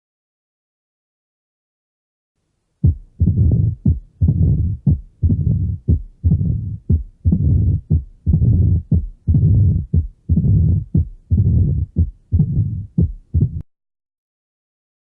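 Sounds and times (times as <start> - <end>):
heartbeat with murmur: 2.8 - 13.7.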